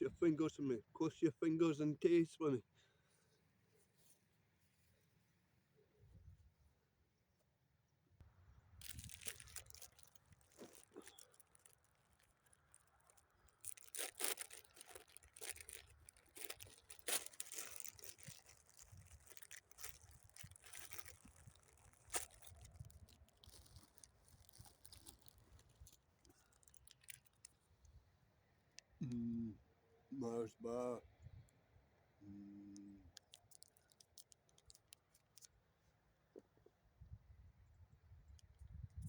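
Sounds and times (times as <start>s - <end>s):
plastic crinkling and rustling: 8.7s - 27.6s, 33.1s - 35.5s
crackles and clicks: 8.8s - 27.9s, 32.7s - 35.6s.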